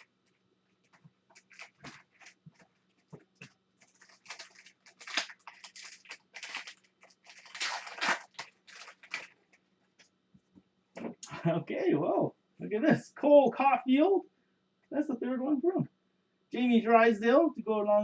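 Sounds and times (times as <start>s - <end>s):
wrapper crinkling and tearing: 0.9s - 3.1s, 3.8s - 9.6s.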